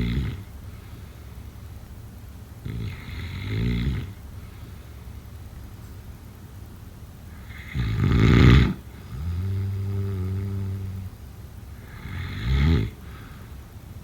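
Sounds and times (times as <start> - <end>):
person snoring: 0.0 - 0.4, 7.4 - 11.1, 11.8 - 13.0
steady low hum: 0.0 - 14.0.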